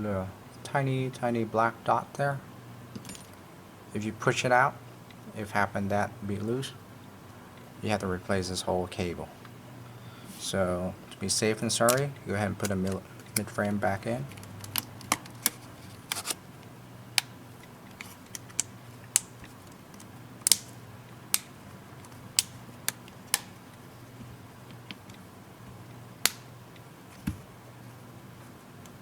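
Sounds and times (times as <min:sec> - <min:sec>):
faint low hum: 0:00.0 - 0:29.0
plastic clicks and snaps: 0:14.3 - 0:16.4, 0:17.9 - 0:23.5.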